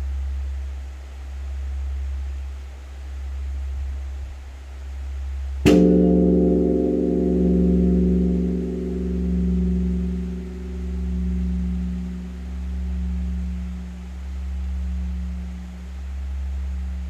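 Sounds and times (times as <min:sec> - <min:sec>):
large temple bell ringing: 0:05.7 - 0:17.0.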